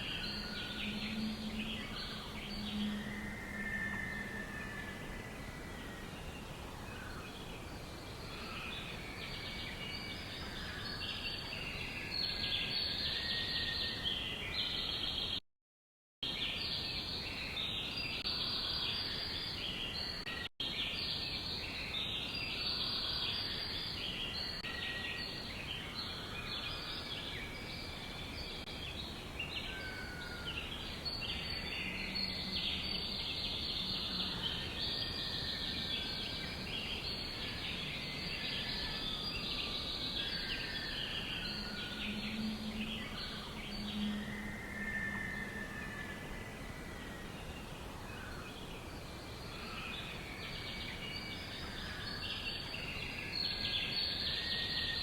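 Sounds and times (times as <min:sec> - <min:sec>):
songbirds chirping in chorus: 0:00.0 - 0:15.4, 0:16.2 - 0:55.0.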